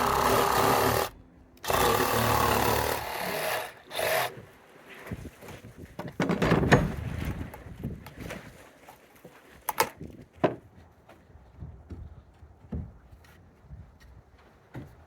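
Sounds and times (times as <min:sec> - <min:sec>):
wood scraping and rustling: 0:03.3 - 0:11.2
wood knocks and clacks: 0:06.0 - 0:07.3.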